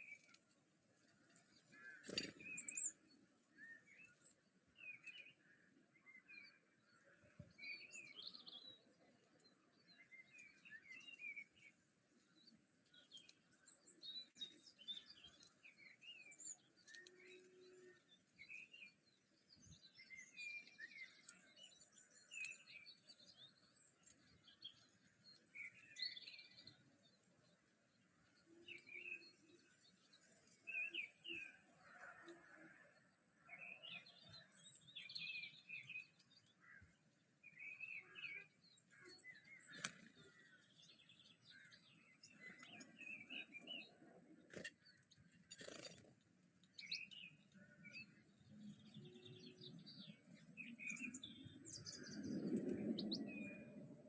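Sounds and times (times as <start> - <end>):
small birds chirping: 0.0 - 54.0.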